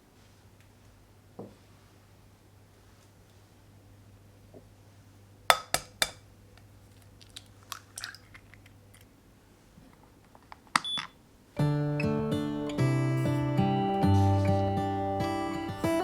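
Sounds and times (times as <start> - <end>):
hard objects clinking: 7.0 - 9.1.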